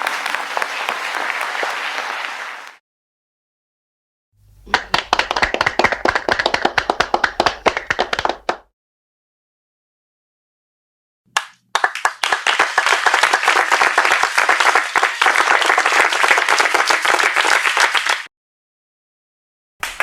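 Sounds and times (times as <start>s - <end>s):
crowd clapping: 0.0s - 2.8s, 4.6s - 8.7s, 11.3s - 18.3s.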